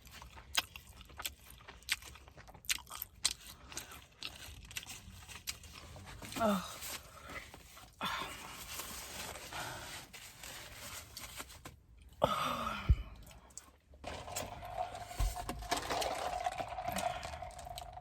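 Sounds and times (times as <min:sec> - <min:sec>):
food wrapping rustling: 0:03.4 - 0:11.8.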